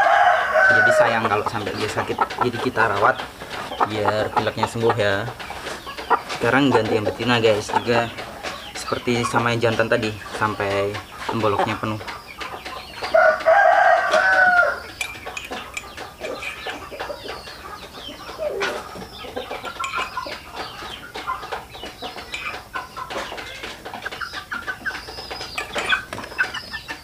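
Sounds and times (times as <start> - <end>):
chicken squawk: 0.0 - 6.9
chickens clucking: 0.0 - 27.0.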